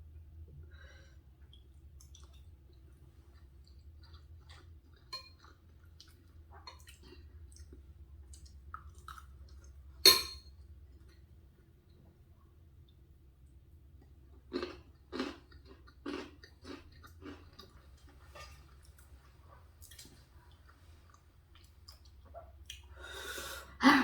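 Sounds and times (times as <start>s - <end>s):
wet chewing of food: 1.4s - 10.0s, 13.9s - 23.0s.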